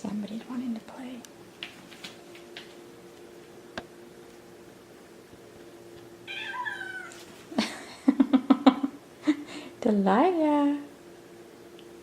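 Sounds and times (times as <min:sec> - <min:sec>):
kitten meowing: 0:06.3 - 0:07.2.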